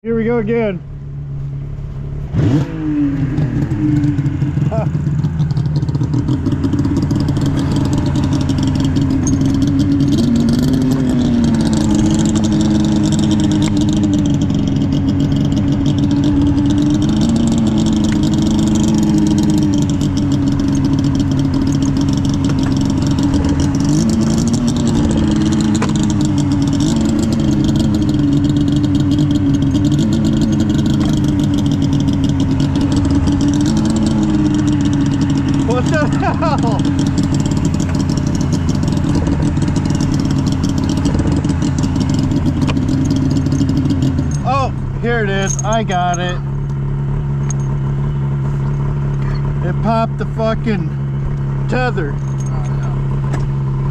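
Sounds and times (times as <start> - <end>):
engine throttle blips: 0.0 - 53.9
snowmobile engine idling: 3.1 - 53.9.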